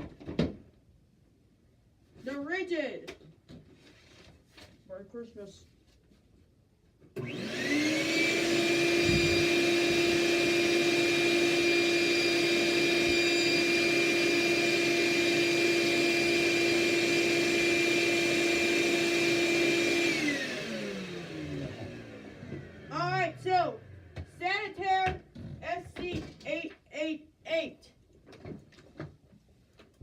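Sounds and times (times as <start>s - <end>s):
shop vacuum motor whine: 7.2s - 24.3s.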